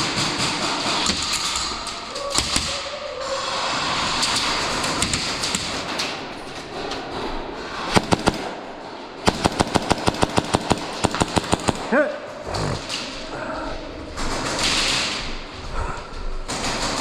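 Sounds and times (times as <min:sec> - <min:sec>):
arena background noise: 0:00.0 - 0:17.0
airsoft guns firing: 0:07.9 - 0:12.9.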